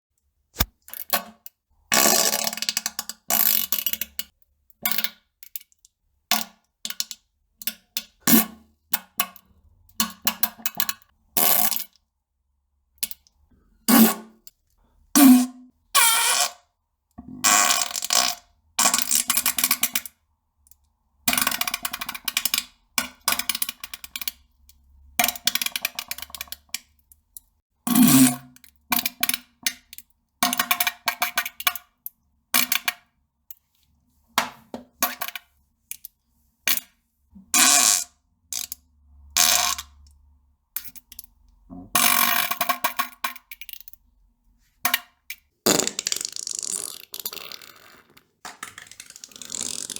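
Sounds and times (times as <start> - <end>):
farts: 45.7 - 49.9.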